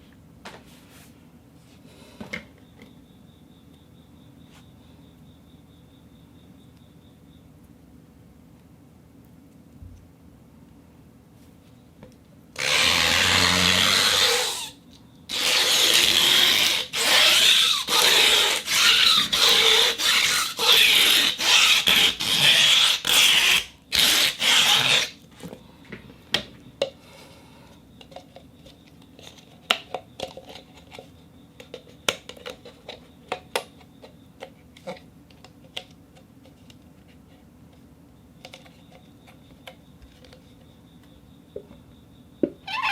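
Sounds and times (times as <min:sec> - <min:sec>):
rubber band rubbed on rosin board: 0:12.6 - 0:14.7, 0:15.3 - 0:25.2.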